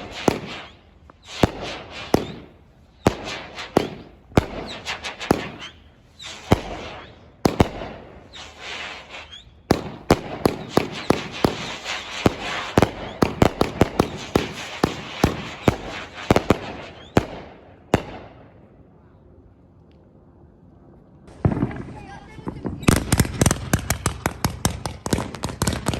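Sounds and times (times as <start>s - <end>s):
crackling hiss: 0.0s - 17.4s
firework bangs: 0.0s - 18.5s, 21.3s - 25.9s.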